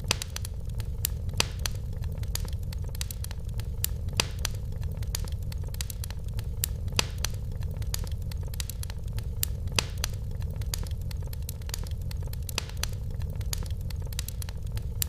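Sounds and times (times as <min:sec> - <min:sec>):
fire crackling and popping: 0:00.0 - 0:15.0
fire flames rumbling: 0:00.0 - 0:15.0.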